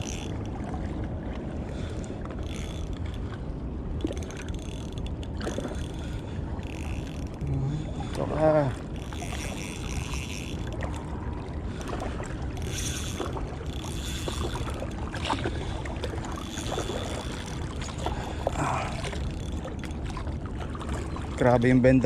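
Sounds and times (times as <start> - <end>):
fishing reel spinning: 0.0 - 0.5, 2.4 - 3.2, 4.0 - 7.6, 8.4 - 11.1, 12.5 - 15.0, 16.3 - 20.0
water noise: 0.0 - 22.0
wind: 0.0 - 22.0.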